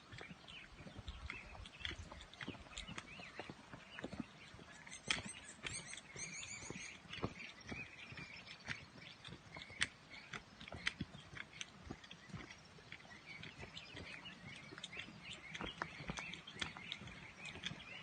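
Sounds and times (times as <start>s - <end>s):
footsteps on stony trail: 0.0s - 18.0s
small birds chirping: 0.0s - 18.0s
bird trill: 4.5s - 18.0s.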